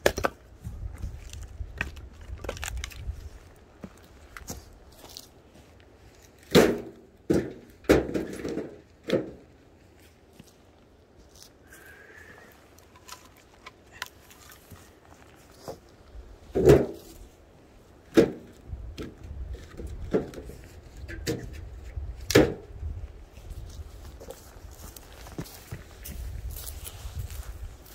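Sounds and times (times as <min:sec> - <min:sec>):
sharp wooden knocks and thuds: 0:06.4 - 0:09.5, 0:16.5 - 0:17.2, 0:18.1 - 0:22.7.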